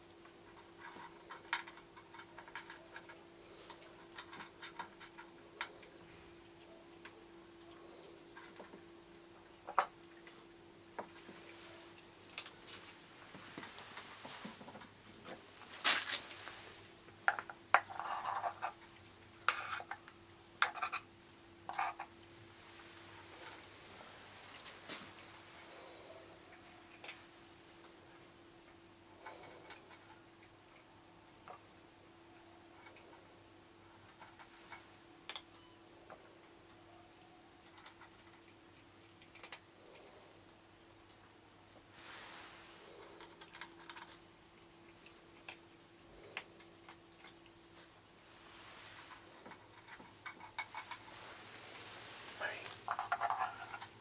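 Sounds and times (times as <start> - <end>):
rustle: 0.0 - 36.9, 37.5 - 54.0
dishes clinking and scraping: 52.8 - 54.0.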